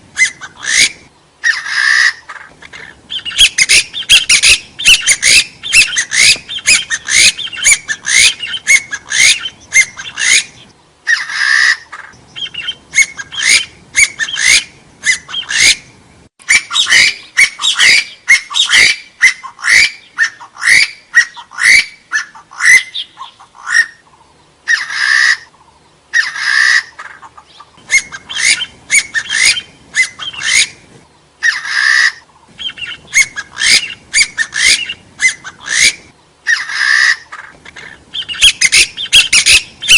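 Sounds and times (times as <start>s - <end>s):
partridge calling rising notes: 0.2s - 39.9s.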